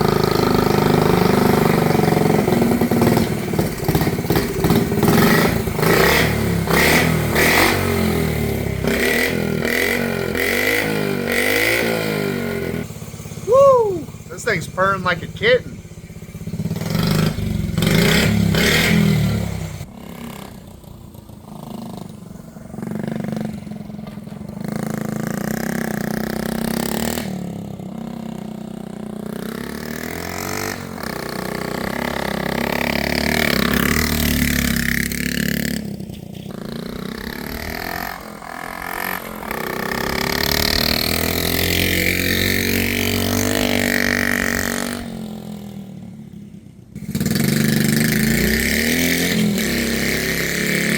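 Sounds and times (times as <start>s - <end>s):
small motorcycle engine revving: 0.0s - 50.9s.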